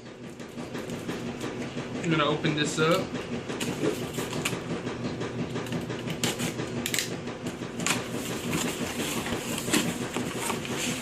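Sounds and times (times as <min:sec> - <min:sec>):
packaging rustling: 0:08.0 - 0:11.0.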